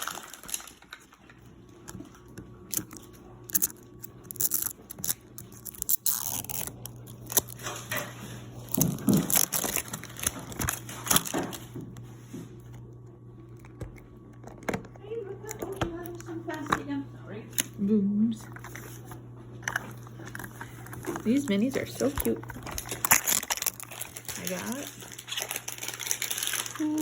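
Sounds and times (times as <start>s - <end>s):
plastic packaging crinkling and tearing: 0.0s - 11.8s, 19.6s - 27.0s.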